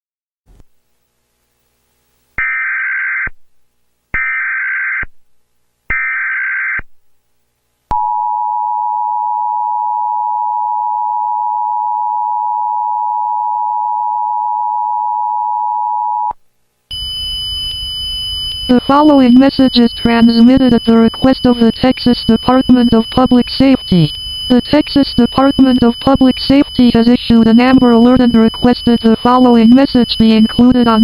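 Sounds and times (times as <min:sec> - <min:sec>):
screeching data bursts: 0:16.9 - 0:31.0
two-tone attention signal: 0:16.9 - 0:31.0.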